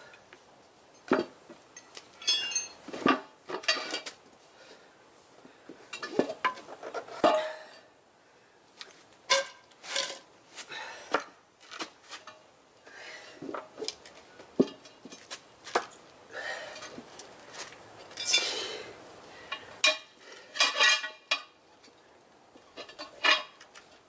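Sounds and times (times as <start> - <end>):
metal hand tools clinking: 1.8 - 2.8, 18.1 - 18.6.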